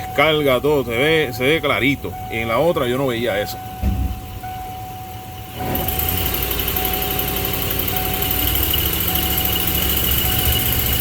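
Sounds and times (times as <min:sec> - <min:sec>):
thin steady tone: 0:00.0 - 0:11.0
car engine revving: 0:05.5 - 0:11.0.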